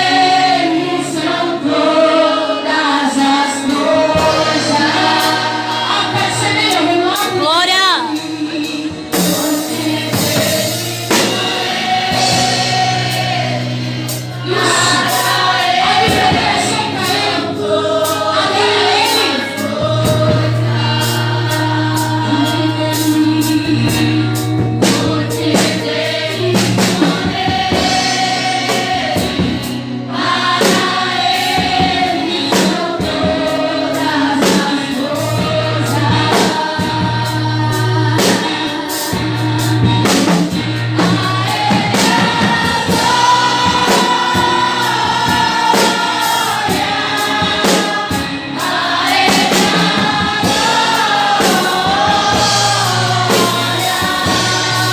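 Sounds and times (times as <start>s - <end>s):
band playing: 0.0s - 54.9s
choir singing: 0.0s - 54.9s
bass line: 2.8s - 54.9s
drum hits: 9.2s - 17.4s.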